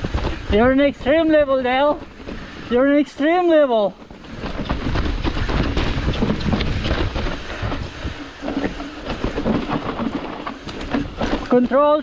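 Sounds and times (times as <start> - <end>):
wind rumbling on microphone: 0.0 - 3.2, 3.9 - 12.0
tyres rumbling over rocks: 0.0 - 12.0
bike chain and frame clattering: 4.0 - 12.0.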